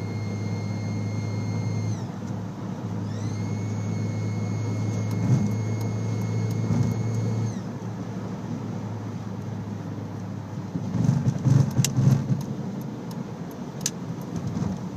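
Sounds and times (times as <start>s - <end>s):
turbocharged engine whining: 0.0s - 9.3s
thumps and clicks: 10.9s - 12.5s.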